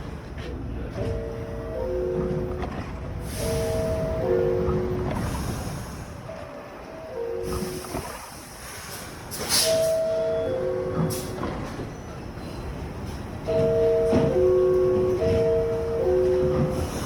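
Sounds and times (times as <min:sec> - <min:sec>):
two-note door chime: 0:13.5 - 0:16.9.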